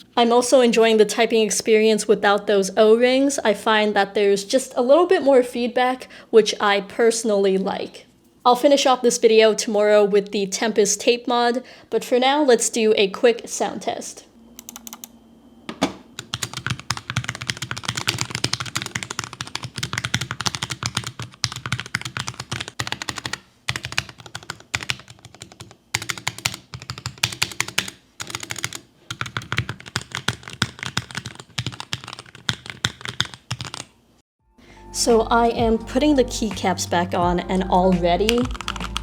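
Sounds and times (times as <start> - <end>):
mechanical keyboard typing: 14.6 - 15.1, 16.2 - 34.0, 38.2 - 39.0.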